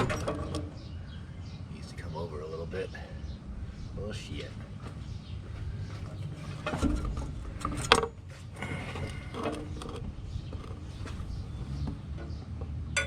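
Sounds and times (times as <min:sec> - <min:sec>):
metal clunks and scrapes: 0:00.0 - 0:00.9, 0:04.6 - 0:12.5.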